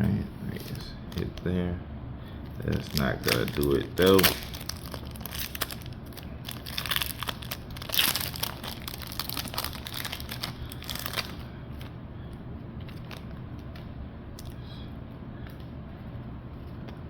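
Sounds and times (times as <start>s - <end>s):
cards rustling: 2.6s - 11.4s
foil wrapper crinkling and tearing: 2.7s - 11.4s.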